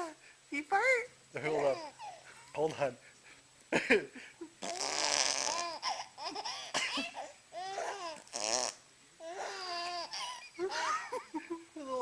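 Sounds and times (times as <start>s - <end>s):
fart sounds: 4.6s - 5.8s, 8.2s - 8.8s
baby laughing: 4.6s - 8.4s, 9.3s - 11.2s.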